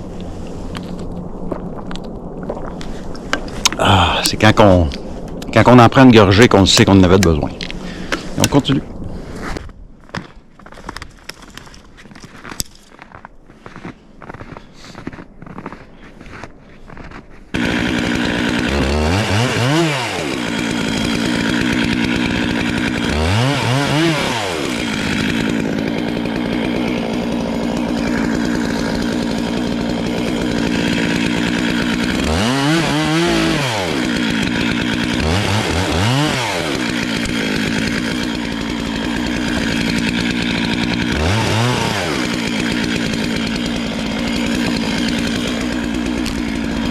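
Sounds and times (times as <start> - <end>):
crunching footsteps: 0.0 - 3.8, 7.4 - 18.6, 36.9 - 46.9
chainsaw revving: 17.6 - 46.9.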